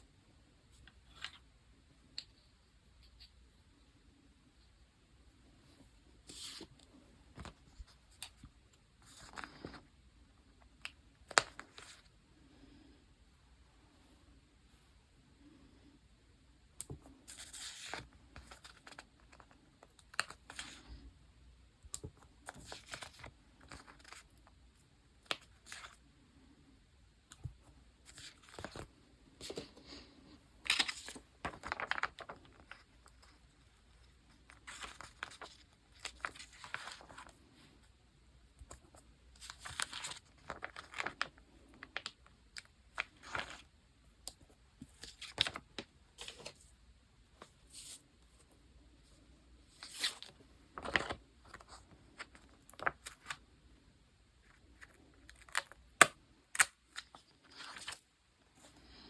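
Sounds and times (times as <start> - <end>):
paper rustling: 30.6 - 33.3, 38.7 - 42.1, 49.8 - 53.4.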